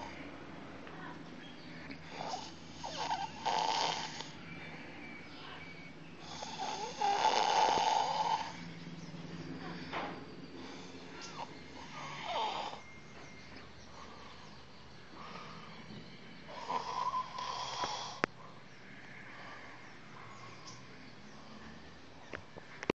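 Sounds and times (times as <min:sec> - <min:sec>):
person snoring: 0:02.1 - 0:04.4, 0:06.2 - 0:08.6, 0:10.7 - 0:12.9, 0:16.5 - 0:18.3.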